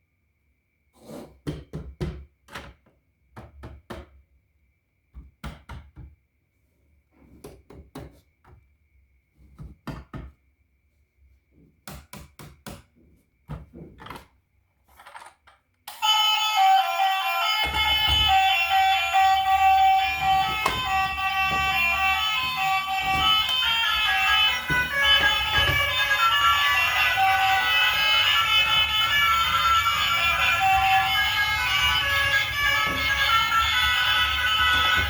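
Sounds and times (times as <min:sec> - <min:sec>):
knocks and clicks of handled objects: 0:20.2 - 0:27.2.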